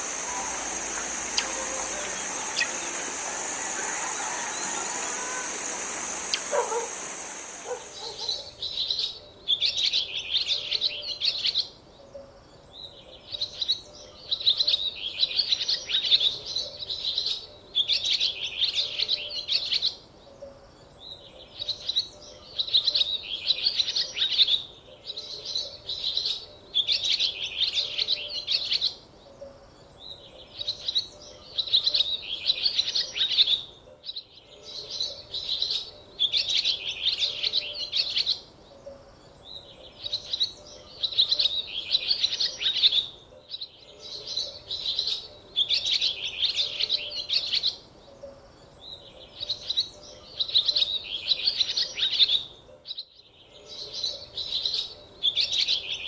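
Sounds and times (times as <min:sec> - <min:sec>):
rushing hiss with high whine: 0:00.0 - 0:08.6
songbird twittering: 0:00.0 - 0:08.6.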